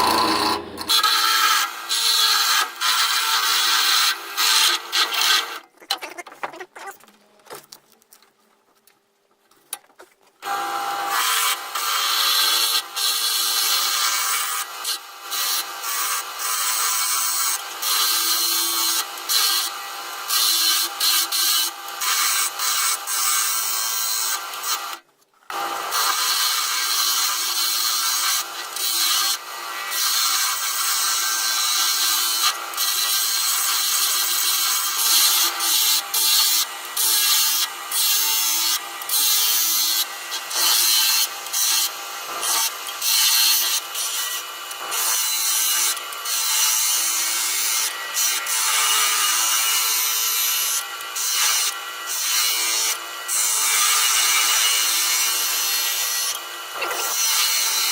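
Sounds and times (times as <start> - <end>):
tool scraping spinning wood: 0.0 - 1.2
wood lathe hum: 0.0 - 2.6.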